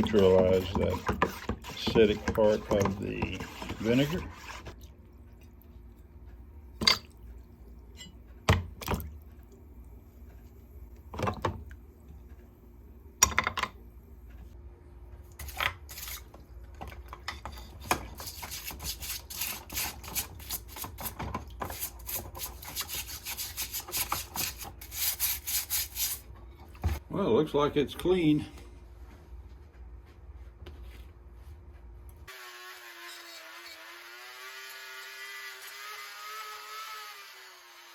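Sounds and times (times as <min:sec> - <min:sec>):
brush scrubbing metal: 0:00.0 - 0:04.8, 0:18.1 - 0:26.2.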